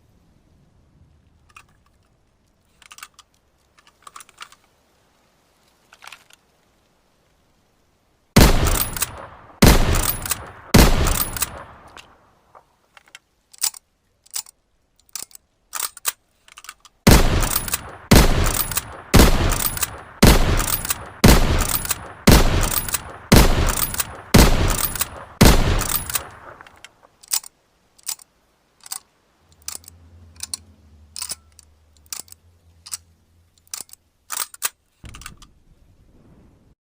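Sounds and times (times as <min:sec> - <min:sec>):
metallic rifle lever clicks: 0:01.4 - 0:04.8, 0:08.6 - 0:09.2, 0:09.9 - 0:12.1, 0:12.9 - 0:20.0, 0:20.6 - 0:35.6
rifle shots echoing: 0:08.4 - 0:12.2, 0:17.0 - 0:26.6.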